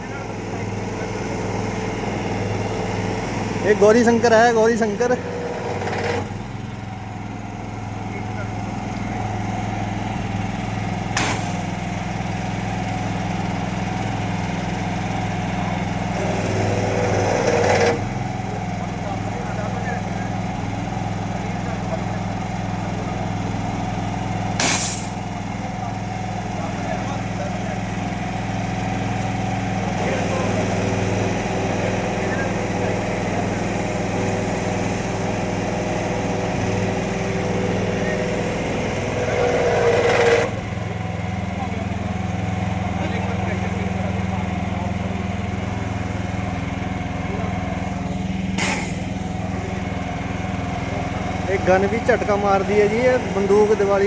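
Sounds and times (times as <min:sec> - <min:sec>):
engine humming: 0:00.0 - 0:54.0
water jetting hiss: 0:24.6 - 0:25.2.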